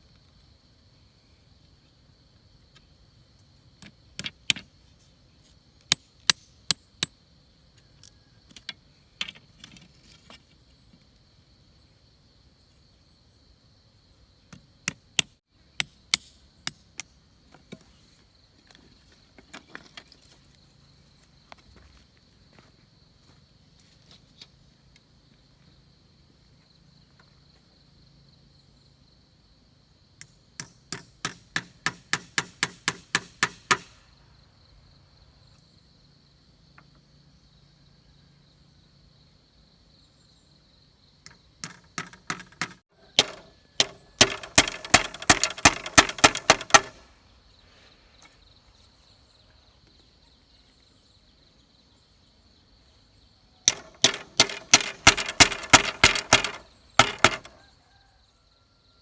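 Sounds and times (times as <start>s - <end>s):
rapid chopping strikes: 30.6s - 34.0s, 41.6s - 47.0s, 53.7s - 57.6s.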